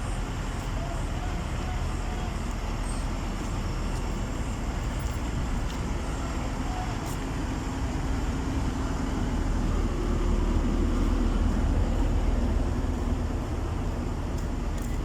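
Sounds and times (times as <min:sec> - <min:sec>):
engine rumbling: 0:00.0 - 0:15.0.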